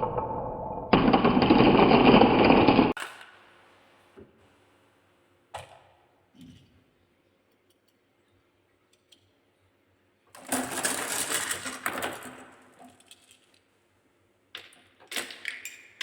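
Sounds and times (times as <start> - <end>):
marbles rattling down a track: 1.0 - 3.0, 10.4 - 12.3.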